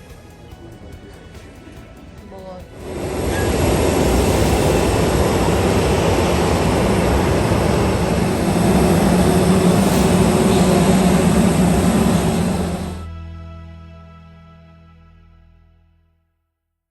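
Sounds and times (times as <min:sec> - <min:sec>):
jet engine noise: 0:02.7 - 0:13.0.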